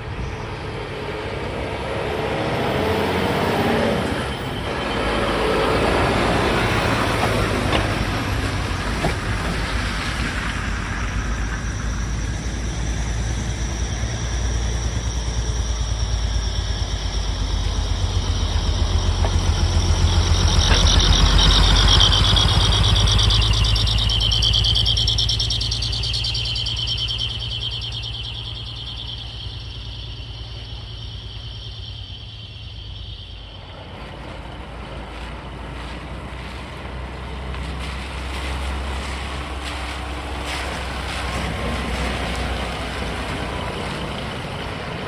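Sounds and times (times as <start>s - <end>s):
diesel truck engine rumbling: 0.0s - 45.0s.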